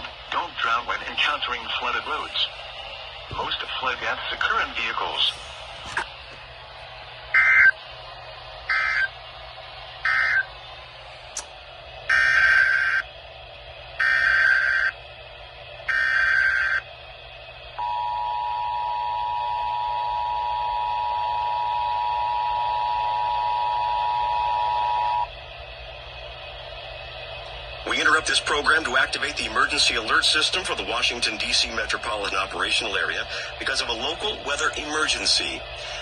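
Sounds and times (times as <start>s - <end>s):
warbling data bursts: 8.7s - 9.1s.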